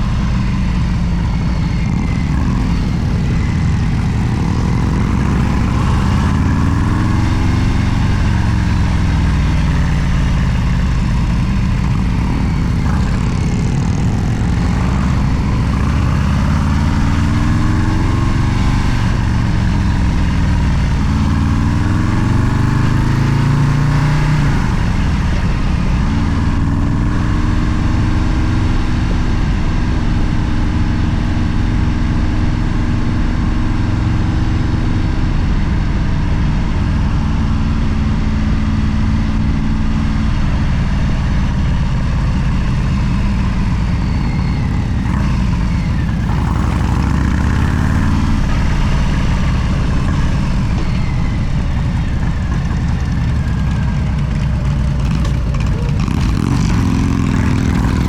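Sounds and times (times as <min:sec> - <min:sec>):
vehicle engine running: 0:00.0 - 0:58.0.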